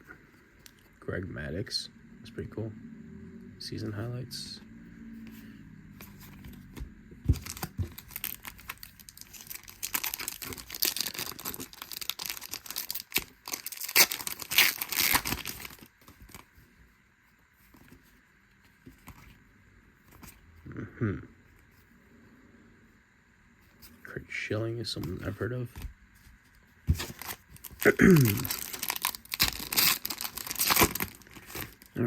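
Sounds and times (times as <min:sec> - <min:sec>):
wrapper crinkling and tearing: 0:07.4 - 0:16.4, 0:27.0 - 0:32.0.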